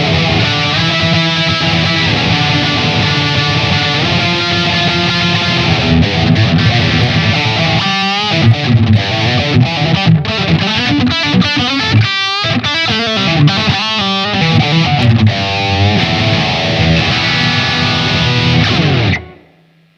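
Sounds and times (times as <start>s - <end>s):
electric guitar chords and runs: 0.0s - 19.9s.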